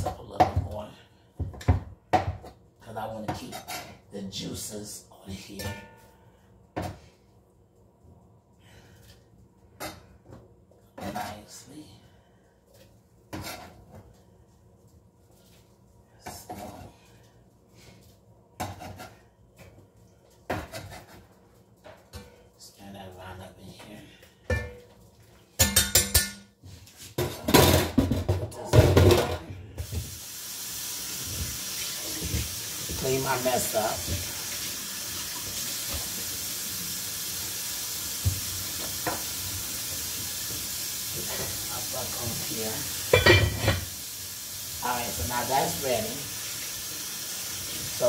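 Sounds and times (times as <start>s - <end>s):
tap running into a sink: 38.1s - 41.6s.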